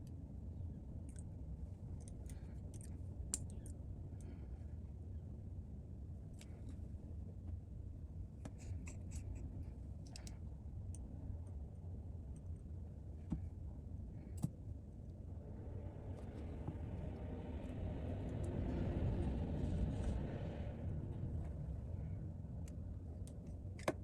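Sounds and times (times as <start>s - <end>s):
steady low hum: 0.0s - 24.0s.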